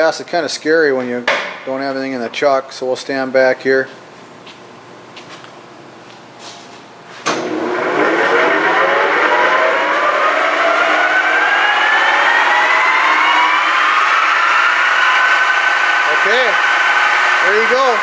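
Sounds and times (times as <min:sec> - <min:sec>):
lathe spindle whine rising: 0:07.3 - 0:18.0.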